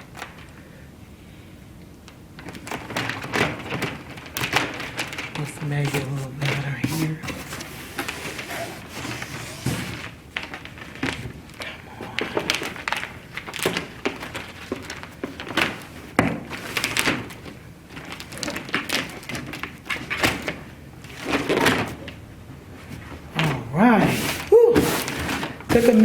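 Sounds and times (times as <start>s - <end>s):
adhesive sheet crinkling: 2.4s - 22.2s.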